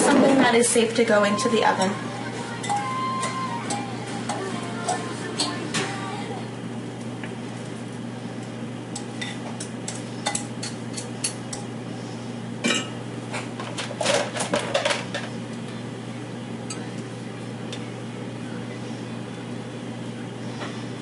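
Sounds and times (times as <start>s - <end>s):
spoon clinking against dishes: 2.6s - 5.6s, 9.0s - 11.7s.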